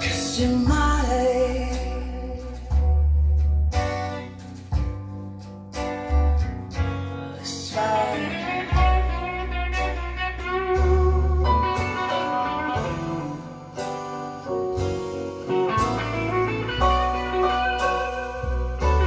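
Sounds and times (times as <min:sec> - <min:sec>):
deep sustained bass line: 0:00.0 - 0:04.0, 0:07.8 - 0:19.0
plucked guitar notes: 0:00.0 - 0:19.0.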